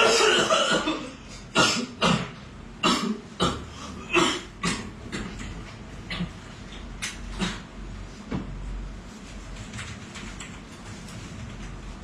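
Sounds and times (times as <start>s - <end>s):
person coughing: 0.0s - 5.4s, 7.3s - 7.7s.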